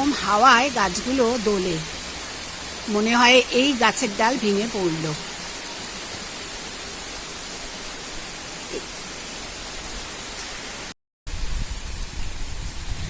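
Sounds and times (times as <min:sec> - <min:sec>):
heavy rain falling: 0:00.0 - 0:12.9
wind rumble on microphone: 0:11.3 - 0:13.0.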